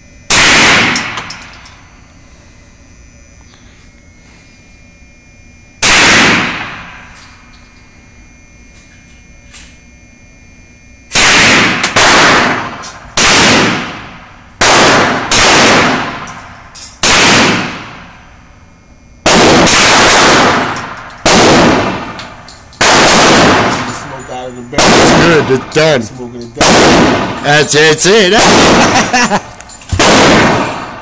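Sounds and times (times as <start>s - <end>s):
gunshots: 0.3s - 1.3s, 5.8s - 7.0s, 11.1s - 16.4s, 17.0s - 18.1s, 19.2s - 22.2s, 22.8s - 24.0s, 24.8s - 25.8s, 26.6s - 29.3s, 29.9s - 31.0s.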